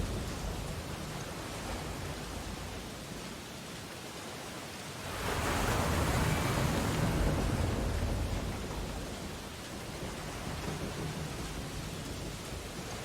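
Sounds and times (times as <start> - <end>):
ocean waves on beach: 0.0 - 13.0.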